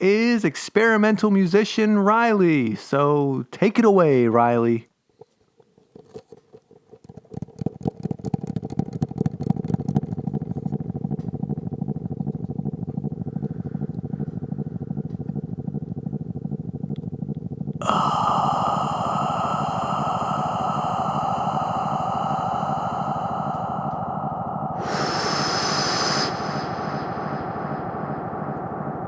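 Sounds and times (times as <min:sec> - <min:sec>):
fast buzzing pulse: 0:13.1 - 0:29.0
harsh noise layer: 0:17.7 - 0:29.0.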